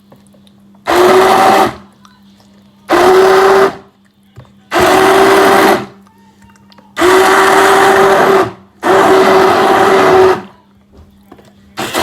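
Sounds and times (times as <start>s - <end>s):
electric hand blender whine: 0.9s - 1.8s, 2.9s - 3.8s, 4.7s - 5.9s, 7.0s - 10.5s, 11.8s - 12.0s.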